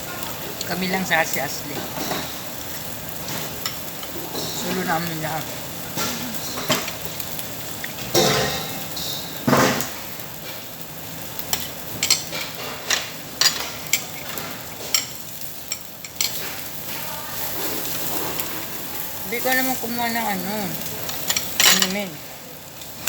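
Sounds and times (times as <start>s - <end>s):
meat sizzling on a grill: 0.0s - 23.0s
tongs clicking against grill: 11.4s - 16.7s, 20.8s - 22.1s.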